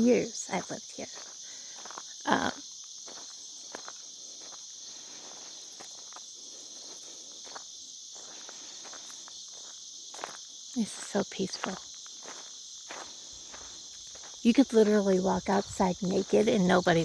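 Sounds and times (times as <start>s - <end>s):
crickets and insects chirping: 0.0s - 17.0s
soft footsteps: 11.6s - 17.0s.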